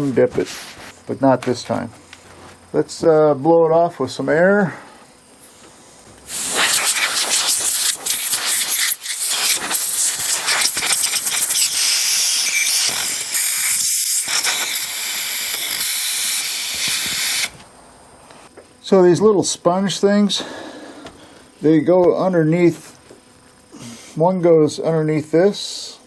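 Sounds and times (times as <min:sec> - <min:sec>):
compressed air hissing from blow gun: 0:06.3 - 0:17.6.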